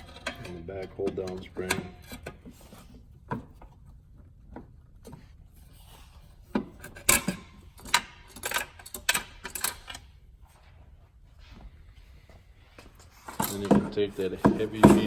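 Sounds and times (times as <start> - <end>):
metal clanks and scrapes: 0.0 - 3.8, 5.1 - 10.1, 13.0 - 15.0.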